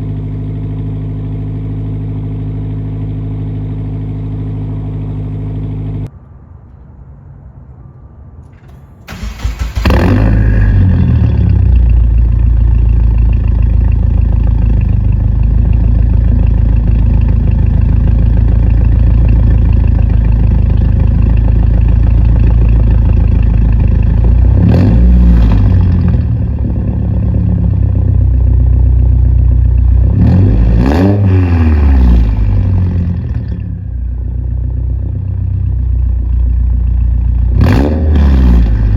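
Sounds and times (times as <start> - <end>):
car engine starting and idling: 8.4 - 38.9
engine revving: 9.1 - 12.3, 24.2 - 26.6, 30.0 - 33.6, 37.5 - 38.9.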